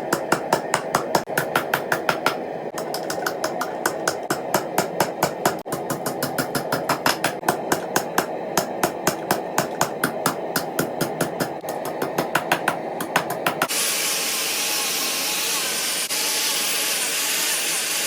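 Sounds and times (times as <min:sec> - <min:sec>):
rapid hammer strikes on metal: 0:00.0 - 0:13.7
steady hum: 0:00.0 - 0:14.5.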